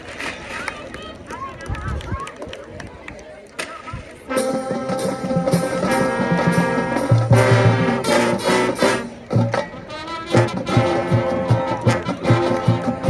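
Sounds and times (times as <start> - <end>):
drumline hits: 4.3 - 13.0
marching band brass chords: 4.3 - 13.0.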